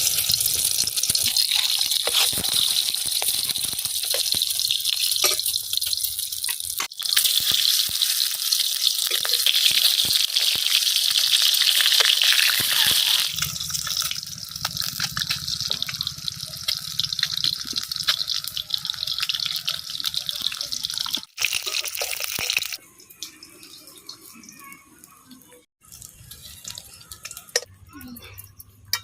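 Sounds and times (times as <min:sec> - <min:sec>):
water dripping: 0:13.3 - 0:29.0.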